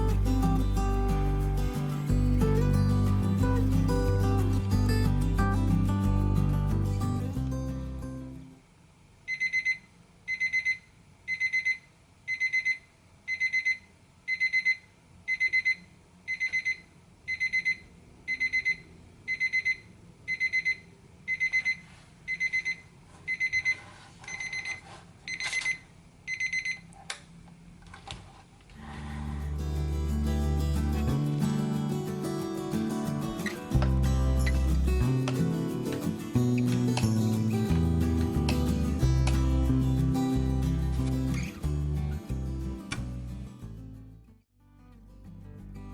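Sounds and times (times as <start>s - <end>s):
alarm clock beeping: 9.3s - 26.8s.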